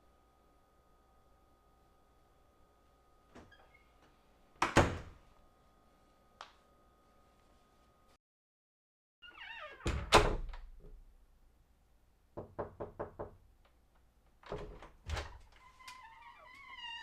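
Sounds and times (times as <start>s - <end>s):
door creaking: 3.4s - 4.0s, 9.2s - 10.9s, 14.4s - 17.0s.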